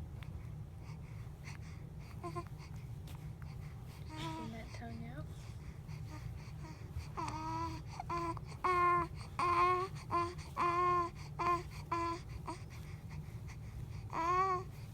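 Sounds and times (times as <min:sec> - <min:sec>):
baby babbling: 0:04.1 - 0:04.8, 0:06.1 - 0:12.6, 0:14.1 - 0:14.7.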